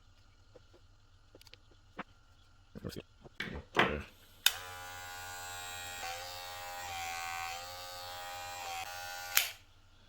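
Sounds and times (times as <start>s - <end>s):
hair clipper switch click: 4.4s - 4.7s, 9.2s - 9.6s
hair clipper buzzing hum: 4.4s - 9.6s.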